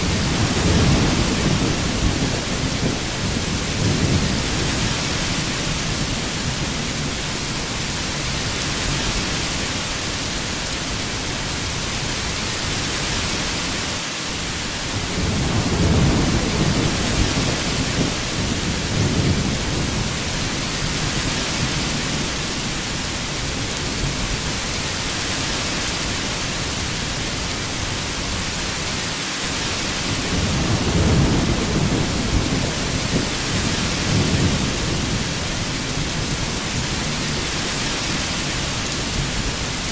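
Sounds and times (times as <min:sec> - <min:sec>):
thunder rolling: 0:00.0 - 0:07.1, 0:15.0 - 0:20.2, 0:30.2 - 0:37.5
heavy rain: 0:00.0 - 0:39.9.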